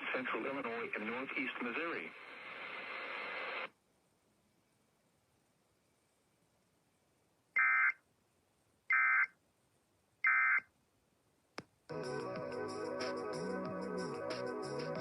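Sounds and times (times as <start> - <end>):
music: 11.9 - 15.0.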